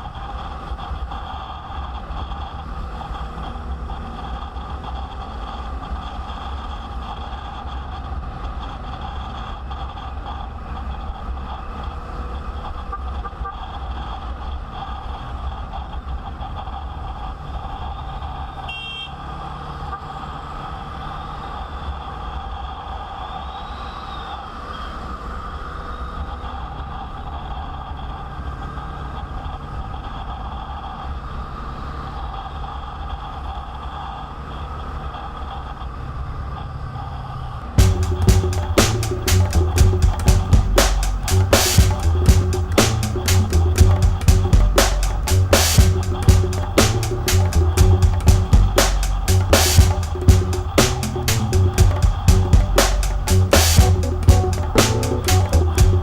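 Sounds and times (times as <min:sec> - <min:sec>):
motorcycle engine drone: 0:37.8 - 0:56.0.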